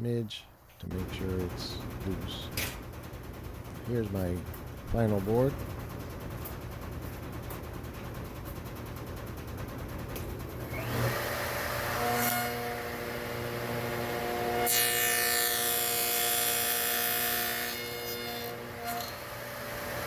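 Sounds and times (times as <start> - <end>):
table saw running: 10.5 - 20.0
saw cutting wooden board: 10.7 - 20.0.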